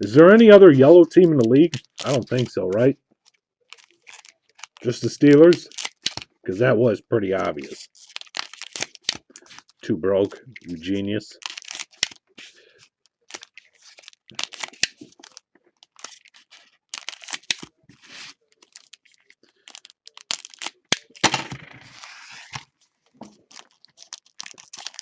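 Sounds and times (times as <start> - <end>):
wrappers crinkling: 0.4 - 6.3, 7.4 - 21.3, 21.9 - 25.0
card packs being torn open: 1.2 - 2.9, 3.7 - 6.3, 7.5 - 9.8, 10.6 - 22.7, 23.3 - 25.0
cards clicking: 1.2 - 6.3.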